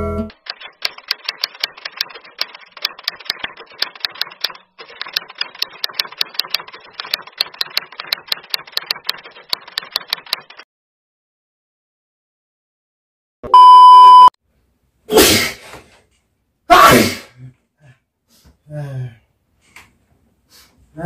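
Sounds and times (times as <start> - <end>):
keyboard typing clicks: 0.4 - 10.6.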